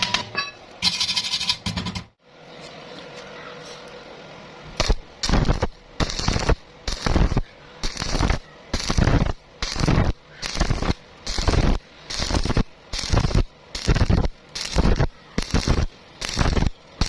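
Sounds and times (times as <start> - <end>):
welding arc crackling: 4.7 - 17.0.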